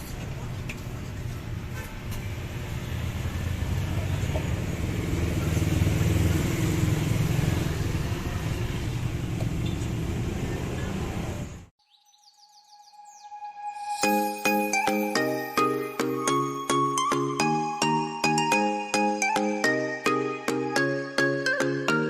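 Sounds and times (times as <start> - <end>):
road traffic noise: 0.0 - 11.7
vehicle engine rumbling: 0.0 - 11.7.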